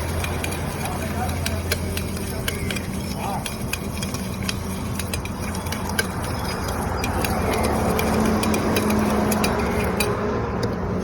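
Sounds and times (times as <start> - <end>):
metal spoon clinking in tin: 0.0 - 10.2
street noise: 0.0 - 11.0.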